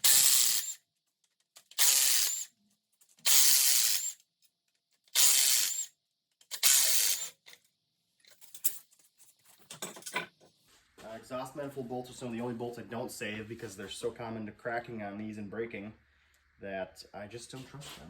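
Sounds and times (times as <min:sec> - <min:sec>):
impact wrench bursts: 0:00.0 - 0:00.8, 0:01.7 - 0:02.5, 0:03.2 - 0:04.2, 0:05.1 - 0:05.9, 0:06.5 - 0:07.4.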